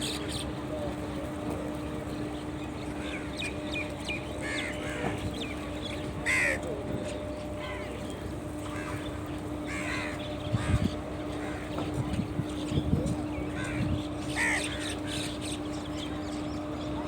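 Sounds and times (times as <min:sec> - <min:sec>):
crows cawing: 0:04.4 - 0:05.2, 0:06.2 - 0:06.6, 0:08.7 - 0:11.7, 0:13.5 - 0:14.9.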